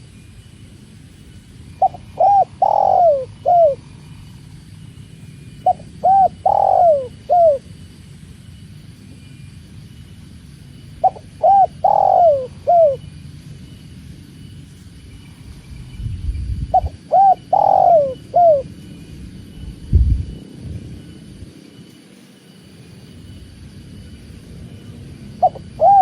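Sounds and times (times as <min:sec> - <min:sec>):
dove cooing: 0:01.7 - 0:04.3, 0:05.6 - 0:07.7, 0:11.0 - 0:13.1, 0:16.7 - 0:18.7, 0:25.4 - 0:26.0.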